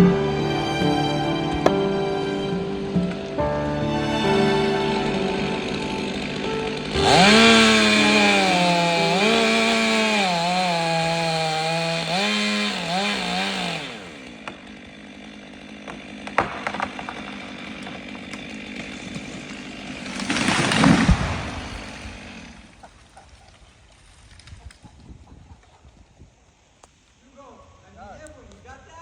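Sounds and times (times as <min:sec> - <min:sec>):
gas-powered saw cutting: 0:00.0 - 0:22.9
knocks: 0:16.2 - 0:18.0.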